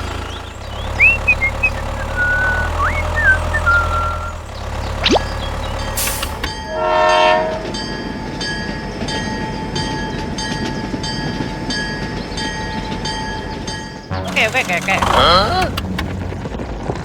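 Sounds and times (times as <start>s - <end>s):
short horn blast: 6.0s - 7.8s, 14.1s - 16.6s.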